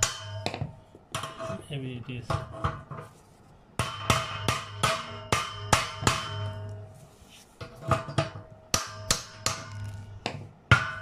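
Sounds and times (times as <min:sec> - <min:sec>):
hammer striking steel tube: 0:00.0 - 0:01.4, 0:03.8 - 0:06.8, 0:07.6 - 0:11.0.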